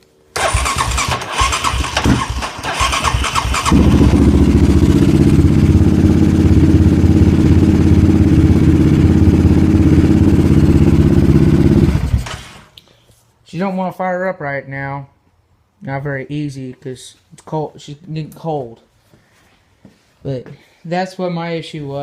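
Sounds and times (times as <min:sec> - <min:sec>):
engine cranking on starter: 0:00.4 - 0:04.5, 0:12.0 - 0:12.7
engine running steadily: 0:03.7 - 0:12.4.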